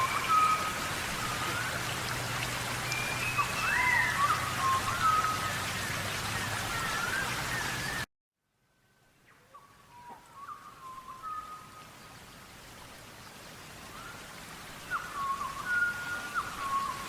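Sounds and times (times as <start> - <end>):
bird whistled calls: 0.0 - 1.7, 2.8 - 8.0, 9.5 - 11.7, 14.9 - 17.0
rain hiss: 0.0 - 8.1, 8.8 - 17.0.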